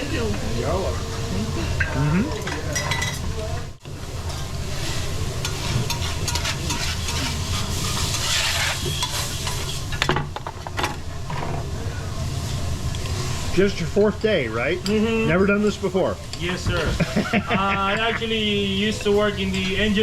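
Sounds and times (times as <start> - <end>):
food sizzling on griddle: 0.0 - 20.0
metal spatulas scraping steel: 4.3 - 10.0.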